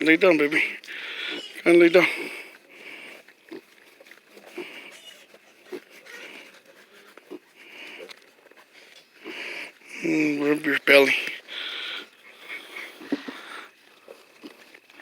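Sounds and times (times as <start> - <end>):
breathy snuffling: 0.4 - 15.0
piglets grunting: 0.5 - 3.8, 4.4 - 8.1.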